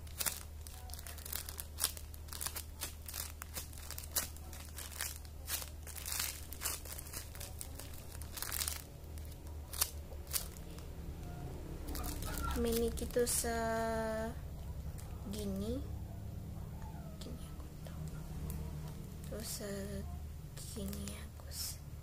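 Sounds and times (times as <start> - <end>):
plastic crinkling and rustling: 0.0 - 15.7, 20.8 - 21.6
low steady hum: 0.0 - 22.0.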